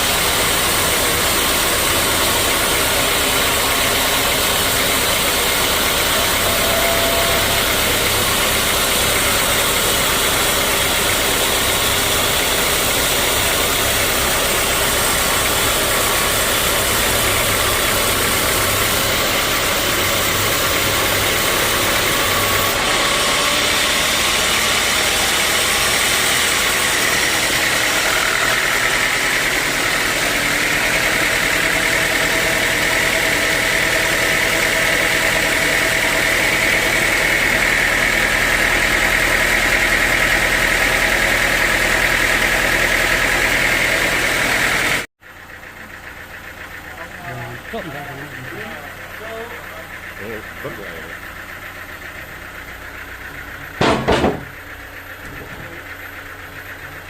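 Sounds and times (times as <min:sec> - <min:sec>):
sawmill machinery running: 0:00.0 - 0:57.0
high held tone: 0:02.2 - 0:12.2.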